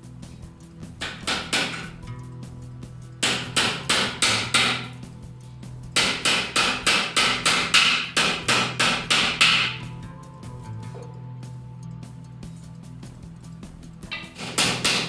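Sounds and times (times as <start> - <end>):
background music: 0.0 - 15.0
hammer striking wood: 1.0 - 2.0, 3.2 - 5.0, 6.0 - 9.9, 14.1 - 15.0.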